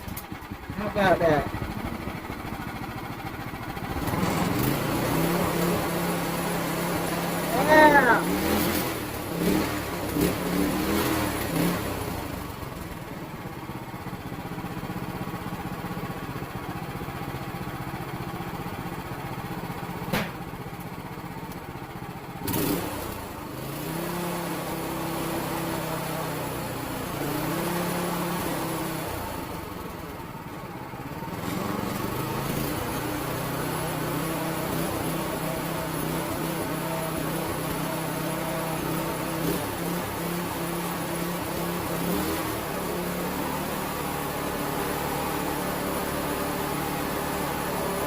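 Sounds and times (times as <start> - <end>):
small engine running: 0.0 - 48.0
sharp knocks: 20.1 - 20.4.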